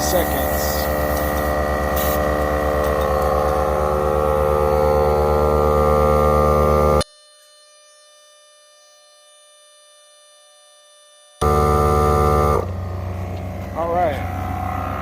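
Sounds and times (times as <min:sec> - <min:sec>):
air compressor pumping: 0:00.0 - 0:07.0, 0:11.4 - 0:15.0
faint steady hum: 0:00.0 - 0:15.0.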